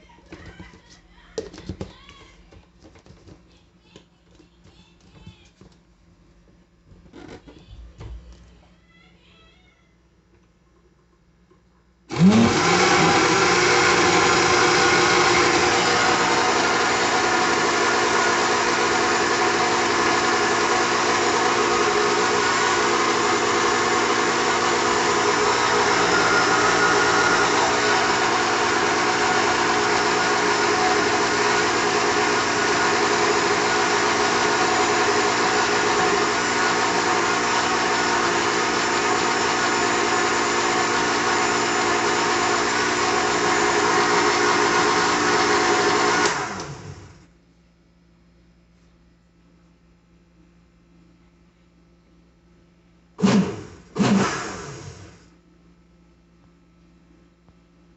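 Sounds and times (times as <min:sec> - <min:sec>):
blender motor whine: 0:12.1 - 0:47.2, 0:53.2 - 0:55.3.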